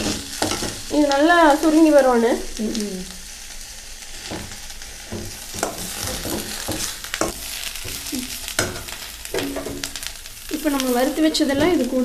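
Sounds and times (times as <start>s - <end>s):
utensil scraping a pan: 0.0s - 0.9s, 4.2s - 12.0s
leaves sizzling in hot oil: 0.0s - 12.0s.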